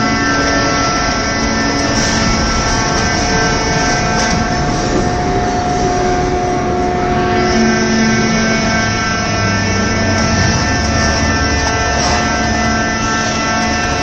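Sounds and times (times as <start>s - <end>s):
baler machine drone: 0.0s - 14.0s
pump and motor whining: 0.0s - 14.0s.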